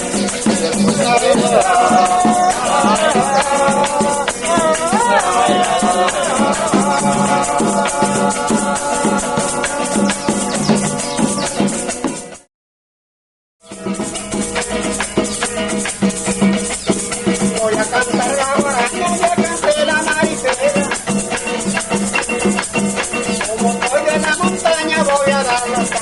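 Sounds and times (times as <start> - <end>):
person singing: 0.0 - 11.8
maracas shaken: 0.0 - 12.5, 13.7 - 26.0
plucked strings: 13.7 - 26.0.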